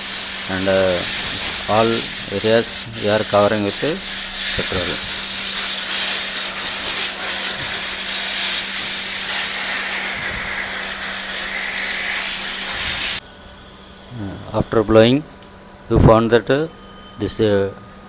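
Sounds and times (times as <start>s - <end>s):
compressed air nozzle hissing: 0.0s - 13.2s.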